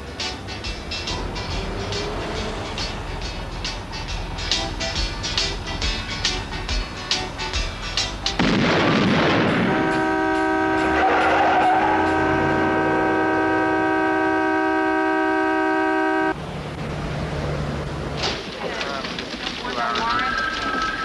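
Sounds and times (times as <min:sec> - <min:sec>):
loud boom: 0:08.4 - 0:10.1
vehicle horn blaring: 0:09.6 - 0:16.4.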